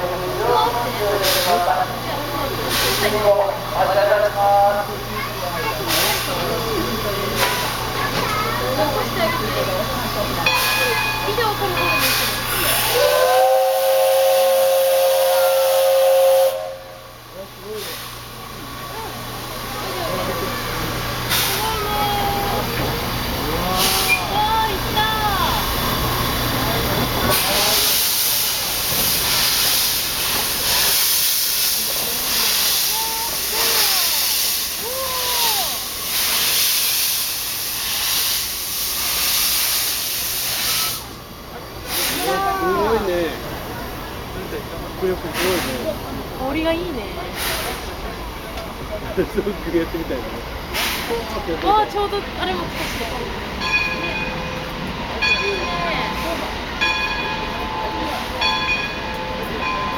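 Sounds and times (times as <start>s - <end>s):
faint voices: 0.0s - 38.2s, 39.1s - 59.9s
steam hiss: 1.0s - 59.9s
steam whistle blast: 12.7s - 17.0s.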